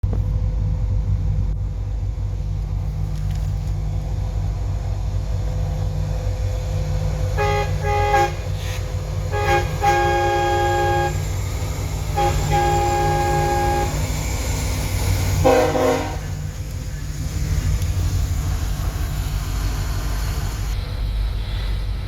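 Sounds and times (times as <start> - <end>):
low rumble: 0.0 - 22.0
train horn blasts: 7.3 - 14.6, 15.4 - 16.4.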